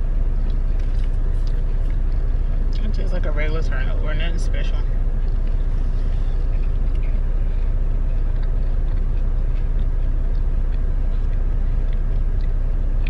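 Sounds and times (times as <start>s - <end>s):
diesel engine idling: 0.0s - 13.0s
faint clicks from eating: 0.4s - 2.9s, 5.2s - 13.0s.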